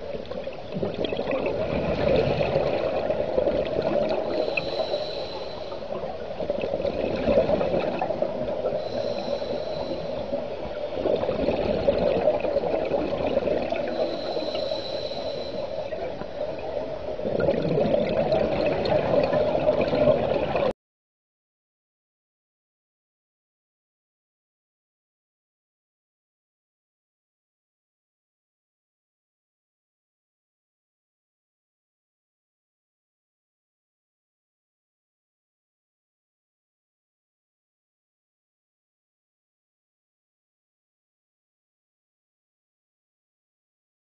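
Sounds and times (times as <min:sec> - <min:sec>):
exhaust bubbles gushing: 0:00.7 - 0:04.7, 0:06.3 - 0:09.1, 0:10.4 - 0:14.3, 0:15.9 - 0:20.7
regulator hissing on inhale: 0:04.0 - 0:06.3, 0:08.6 - 0:10.9, 0:13.8 - 0:16.6.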